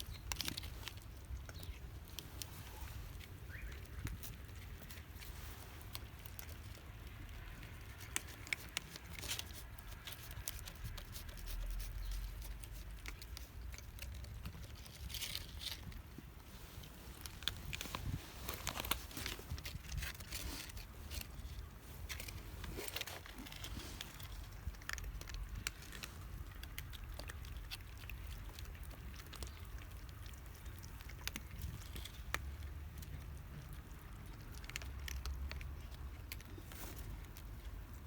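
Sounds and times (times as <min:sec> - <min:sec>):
small crunching clicks: 0:00.0 - 0:38.0
wind rumble on microphone: 0:17.4 - 0:20.4.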